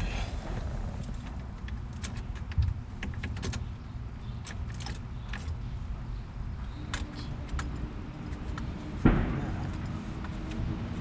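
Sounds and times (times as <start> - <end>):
low rumble: 0.0 - 1.7.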